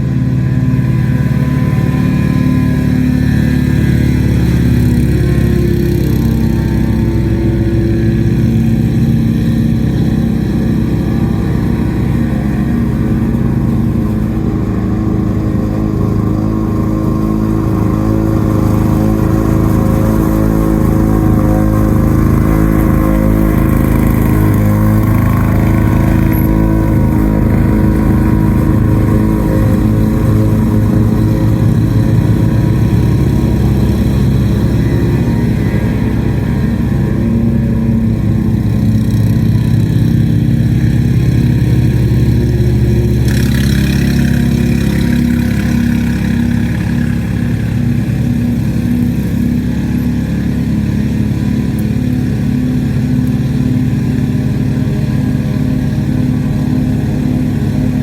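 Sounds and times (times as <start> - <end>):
lawn mower engine running: 0.0 - 58.0.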